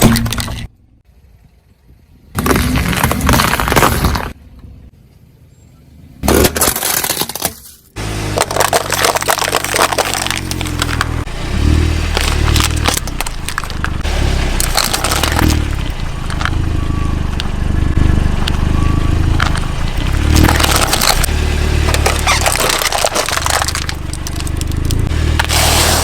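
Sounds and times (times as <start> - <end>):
objects crunching under car tyre: 0.0 - 0.7, 2.3 - 4.4, 6.2 - 26.0
car engine running: 8.0 - 26.0.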